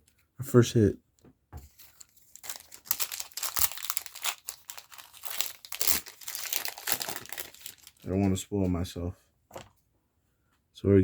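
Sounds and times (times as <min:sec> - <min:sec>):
foil wrapper crinkling and tearing: 0:01.8 - 0:08.5.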